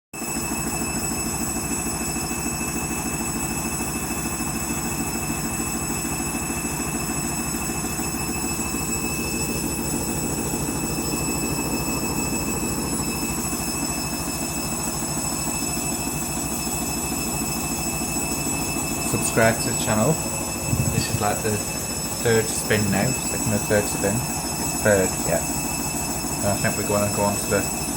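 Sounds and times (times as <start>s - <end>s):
washing machine drum spinning: 0.4s - 27.9s
high-pitched whine: 8.0s - 27.9s.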